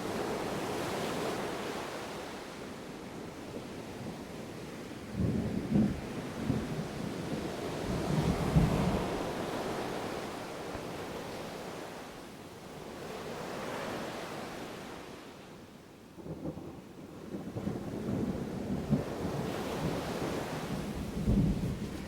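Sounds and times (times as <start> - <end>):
ocean surf washing: 0.0 - 15.6, 17.5 - 22.0
distant thunder rumble: 5.1 - 10.3, 16.2 - 22.0.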